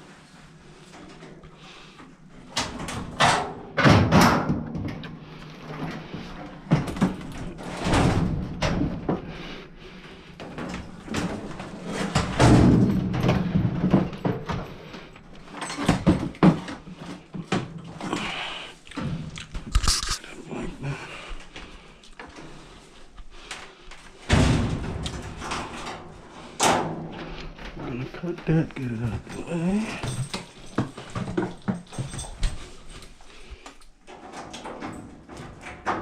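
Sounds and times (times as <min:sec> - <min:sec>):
parts knocking and clattering: 0:00.9 - 0:18.3, 0:23.4 - 0:36.0.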